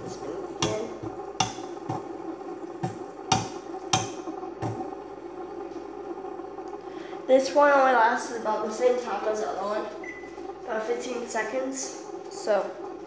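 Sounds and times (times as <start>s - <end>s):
music with sharp knocking beat: 0.0s - 5.0s.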